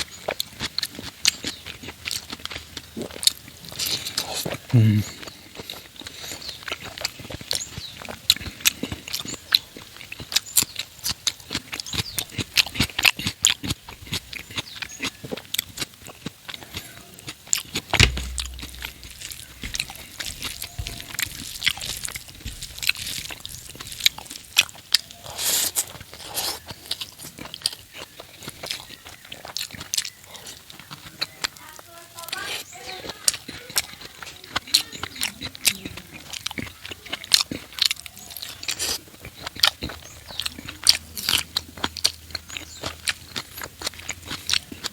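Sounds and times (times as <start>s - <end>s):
person chewing food: 0.0s - 31.6s, 32.3s - 44.9s
wet mouth clicks and crunches: 0.0s - 31.6s, 32.3s - 44.9s
low thump: 18.0s - 23.2s.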